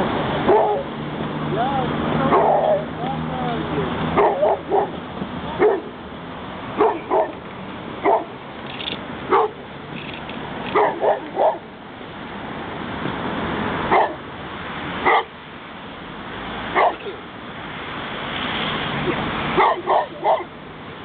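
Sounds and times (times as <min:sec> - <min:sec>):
dog barking: 0:00.5 - 0:00.9, 0:02.3 - 0:02.9, 0:04.2 - 0:04.9, 0:05.6 - 0:05.9, 0:06.8 - 0:07.4, 0:08.0 - 0:08.3, 0:09.3 - 0:09.6, 0:10.7 - 0:11.6, 0:13.9 - 0:14.2, 0:15.0 - 0:15.3, 0:16.8 - 0:17.2, 0:19.0 - 0:20.5.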